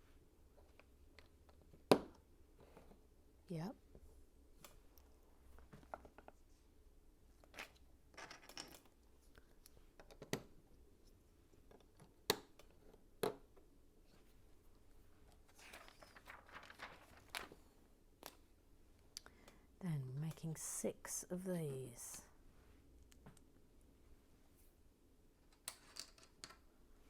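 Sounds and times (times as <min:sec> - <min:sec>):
loose plastic pieces rustling: 0:15.4 - 0:17.6.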